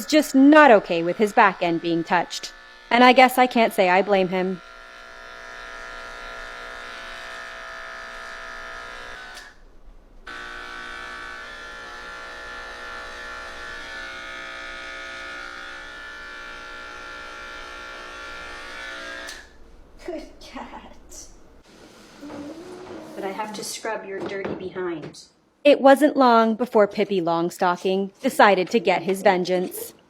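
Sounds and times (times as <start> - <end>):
electric clippers buzzing: 0.0 - 9.6, 10.2 - 19.6.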